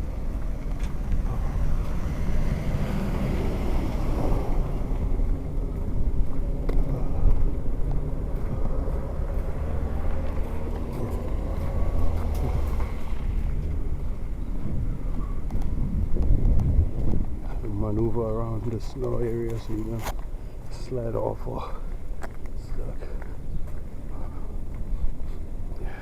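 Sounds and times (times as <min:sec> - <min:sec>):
car passing: 0:00.0 - 0:15.4
city street traffic rumble: 0:00.0 - 0:26.0.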